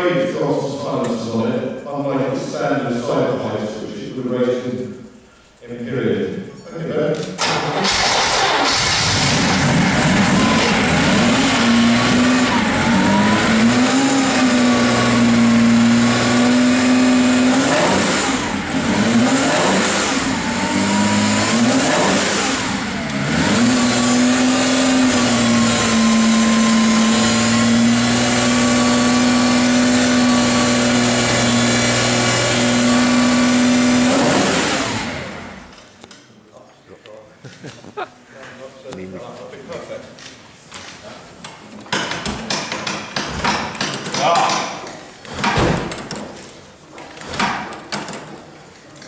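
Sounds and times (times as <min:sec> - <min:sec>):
sports car engine running: 0:07.6 - 0:35.7.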